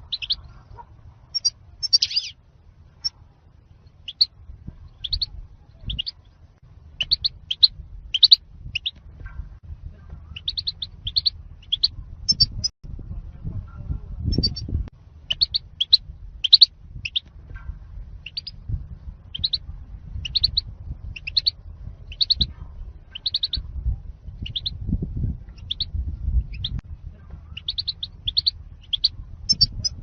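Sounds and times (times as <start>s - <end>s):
low background rumble: 0.0s - 30.0s
goldfinch twittering chirps: 1.4s - 2.4s, 7.0s - 8.9s, 27.6s - 29.9s.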